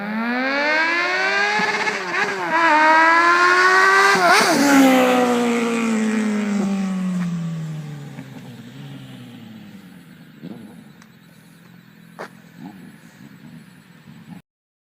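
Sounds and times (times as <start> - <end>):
motorcycle engine revving: 0.0 - 14.4.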